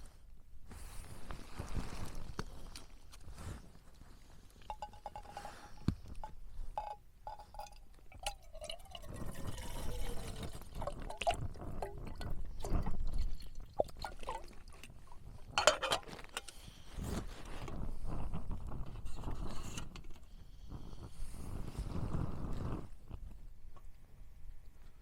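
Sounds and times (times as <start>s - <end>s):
metal cookware clinking: 4.7s - 11.2s, 15.6s - 16.5s
water poured into kettle: 6.8s - 16.4s.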